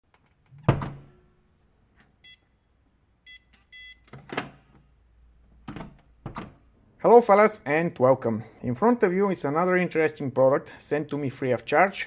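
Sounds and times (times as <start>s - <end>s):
electronic door lock beeping: 3.2s - 4.2s.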